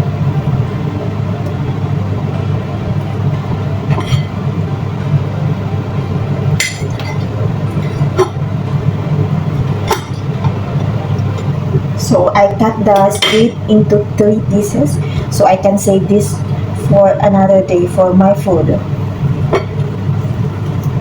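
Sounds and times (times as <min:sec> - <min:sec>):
low hum: 0:00.0 - 0:21.0
utensils and dishes clinking: 0:06.6 - 0:08.4, 0:09.8 - 0:11.5, 0:12.9 - 0:13.6.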